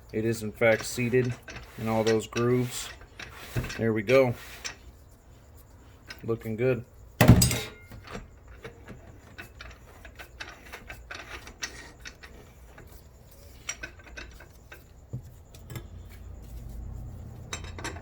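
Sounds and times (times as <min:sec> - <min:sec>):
metal parts clicking and tapping: 0:00.3 - 0:03.8, 0:07.2 - 0:16.5, 0:17.3 - 0:18.0
low steady hum: 0:04.6 - 0:09.7.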